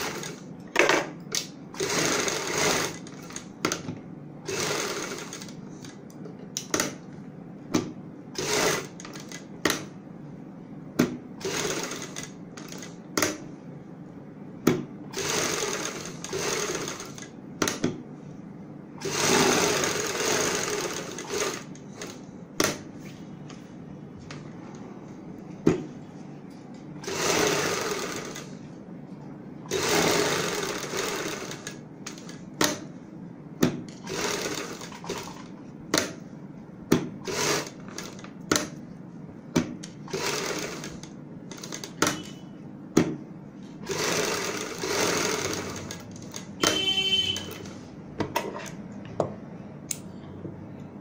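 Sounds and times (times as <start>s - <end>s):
sewing machine stitching fabric: 0.0s - 0.4s, 1.8s - 3.8s, 4.5s - 5.9s, 8.4s - 9.5s, 11.4s - 13.3s, 15.1s - 17.8s, 19.0s - 22.8s, 27.0s - 28.6s, 29.7s - 32.9s, 34.0s - 35.5s, 37.2s - 38.2s, 40.0s - 42.4s, 43.8s - 47.8s.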